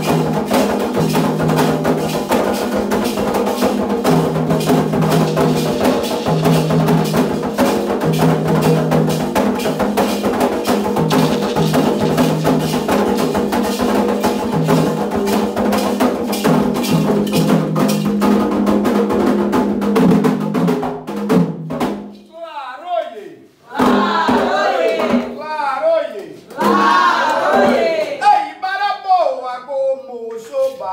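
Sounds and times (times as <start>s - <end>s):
hand drums playing fast rhythm: 0.0s - 22.1s, 23.7s - 25.4s, 26.6s - 28.0s.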